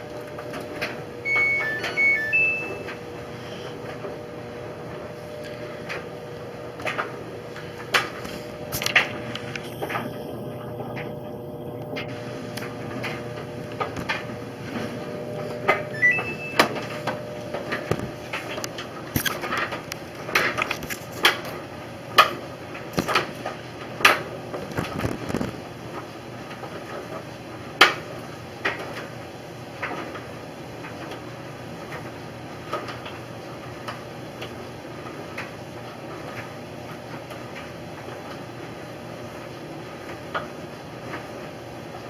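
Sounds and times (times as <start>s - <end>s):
appliance hum: 0.0s - 42.0s
short electronic beep: 1.2s - 3.0s, 15.9s - 16.8s.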